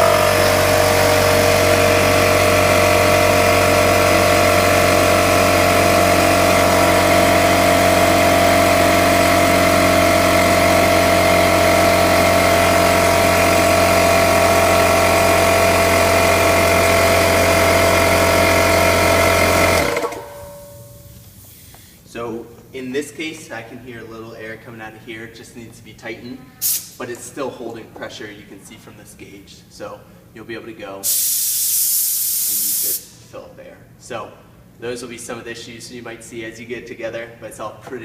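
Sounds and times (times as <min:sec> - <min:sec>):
electric air compressor running: 0:00.0 - 0:21.8, 0:26.6 - 0:27.0, 0:31.0 - 0:33.1.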